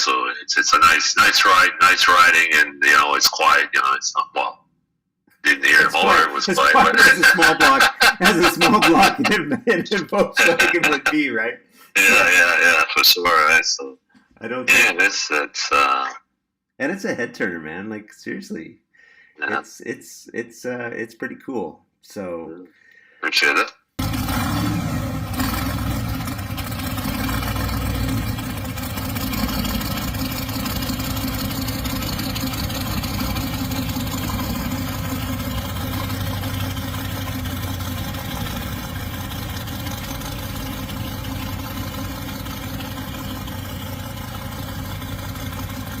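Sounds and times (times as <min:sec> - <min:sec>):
car engine running: 0:05.5 - 0:11.2, 0:24.0 - 0:46.0.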